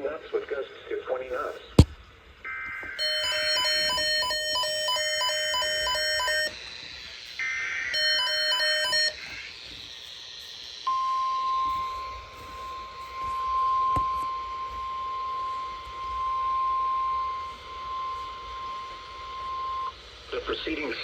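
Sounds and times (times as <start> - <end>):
steady warning alarm tone: 2.5 - 20.0
alarm beeping fast: 3.0 - 6.8, 7.9 - 9.4.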